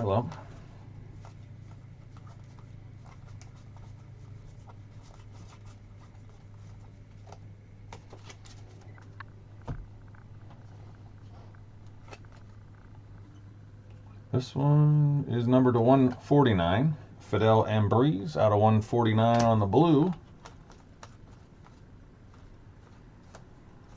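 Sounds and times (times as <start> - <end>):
low hum: 0.0 - 23.9
cards clicking and rustling: 1.2 - 9.3, 11.5 - 13.0, 19.2 - 23.9.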